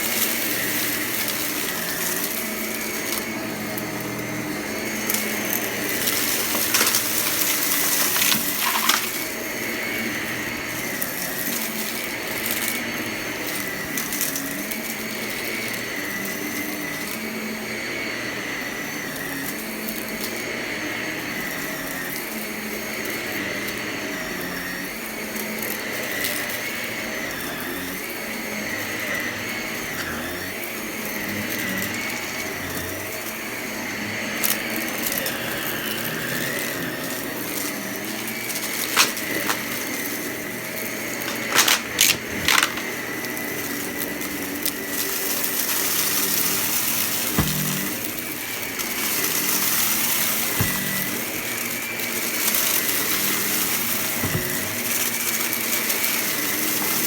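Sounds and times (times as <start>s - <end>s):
vacuum cleaner running: 0.0s - 57.0s
debris crackling and rattling: 5.9s - 9.4s, 38.5s - 40.0s, 41.2s - 42.9s, 44.9s - 57.0s.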